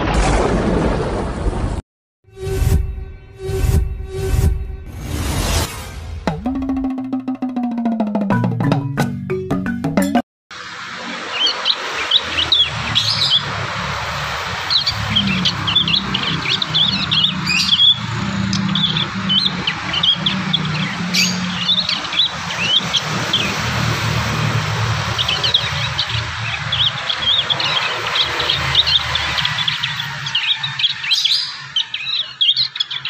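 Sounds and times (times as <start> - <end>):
young birds chirping and twittering: 10.9 - 33.0.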